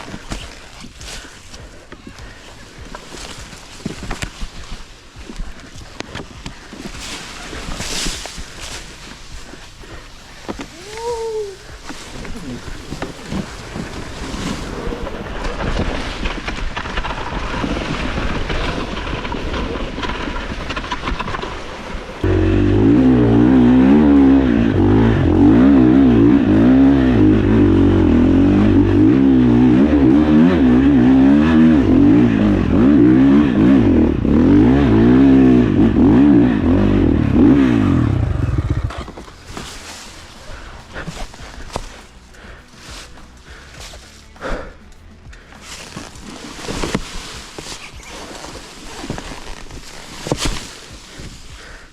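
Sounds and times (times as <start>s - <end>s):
dirt bike engine revving: 22.2s - 42.4s.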